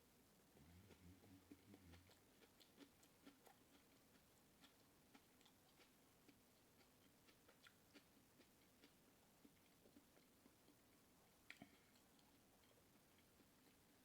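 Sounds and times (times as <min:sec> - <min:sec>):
person eating seafood: 0:00.6 - 0:03.9.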